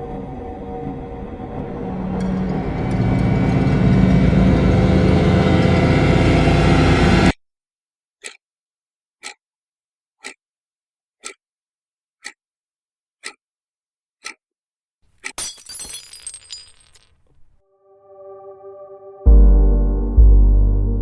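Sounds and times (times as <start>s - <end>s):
clock ticking: 8.2s - 8.4s, 9.2s - 9.4s, 10.2s - 10.4s, 11.2s - 11.4s, 12.2s - 12.4s, 13.2s - 13.4s, 14.2s - 14.4s.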